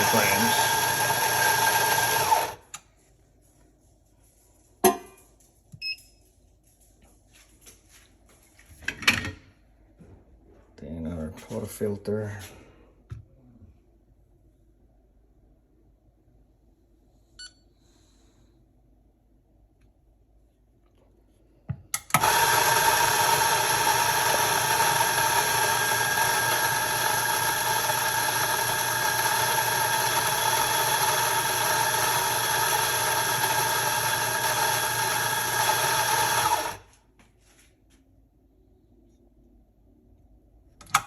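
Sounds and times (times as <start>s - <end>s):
coffee grinder motor: 0.0s - 2.7s, 22.1s - 36.9s.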